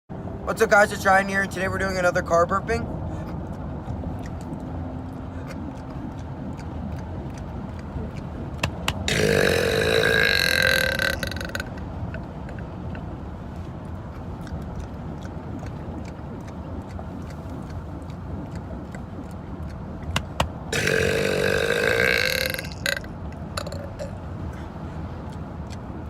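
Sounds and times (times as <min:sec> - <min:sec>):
low car rumble: 0:00.1 - 0:26.0
man burping loudly: 0:09.1 - 0:11.8, 0:20.7 - 0:24.1.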